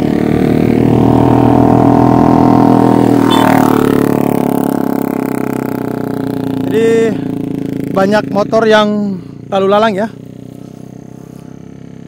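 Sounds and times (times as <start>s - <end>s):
motorcycle passing: 0.0s - 12.0s.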